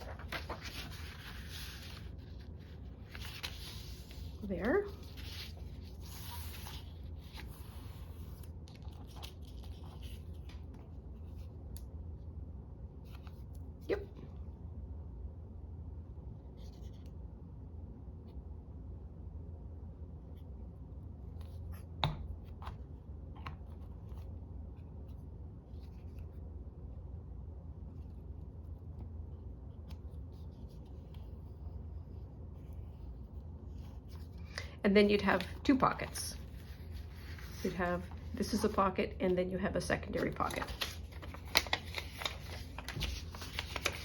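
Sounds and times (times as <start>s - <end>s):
craft materials rustling and crinkling: 0.0s - 10.7s, 40.2s - 44.0s
steady low hum: 0.0s - 44.0s.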